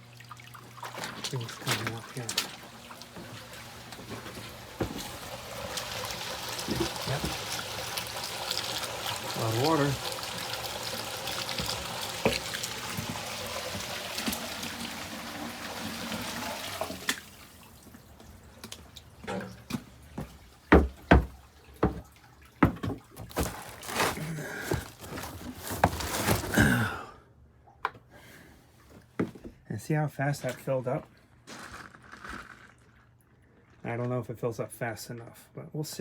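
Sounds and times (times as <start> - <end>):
pump running: 0.0 - 26.8
knocks and drips: 0.6 - 10.5, 11.3 - 14.4, 18.6 - 23.6.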